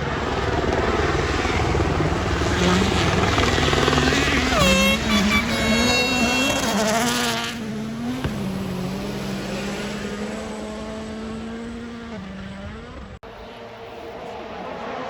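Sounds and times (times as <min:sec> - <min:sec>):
rally car engine passing: 0:00.0 - 0:15.0.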